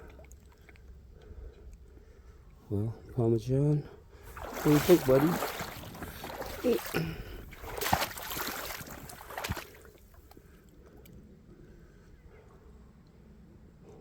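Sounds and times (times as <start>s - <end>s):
faint creek background: 0.0s - 14.0s
footsteps splashing through water: 4.3s - 10.4s.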